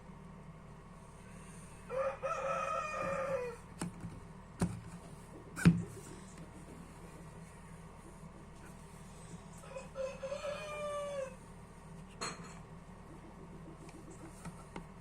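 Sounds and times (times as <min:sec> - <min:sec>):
rooster crowing: 0:01.7 - 0:03.7, 0:09.5 - 0:11.5.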